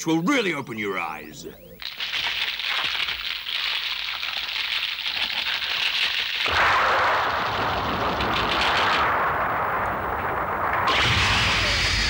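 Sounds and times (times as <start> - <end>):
dense crackling hiss: 0.0 - 12.0
blast-like rumble with deep bass: 6.5 - 12.0.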